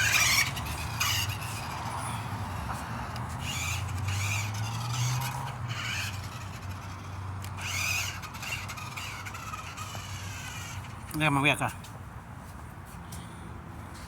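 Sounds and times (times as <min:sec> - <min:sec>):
toy car electric motor whining: 0:00.0 - 0:11.2.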